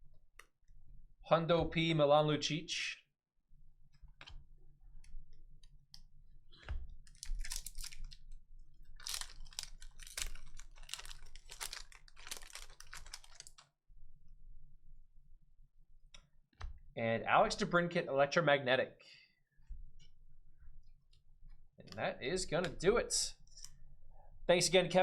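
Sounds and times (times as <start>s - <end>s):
cards flipping and rustling: 6.6s - 8.4s, 9.0s - 13.6s.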